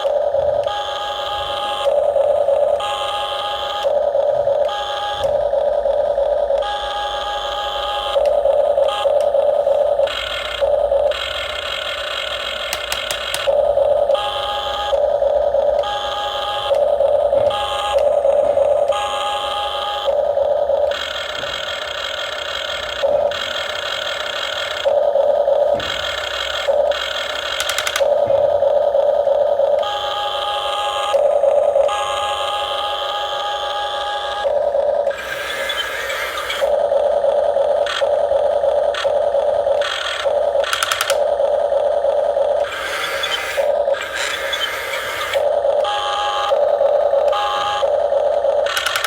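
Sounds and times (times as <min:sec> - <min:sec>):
electric motors and hydraulic pumps whining: 0:00.0 - 0:49.0.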